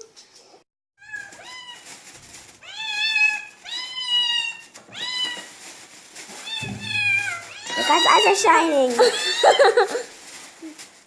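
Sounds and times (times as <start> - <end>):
cat meowing: 2.6 - 5.5, 6.4 - 9.5.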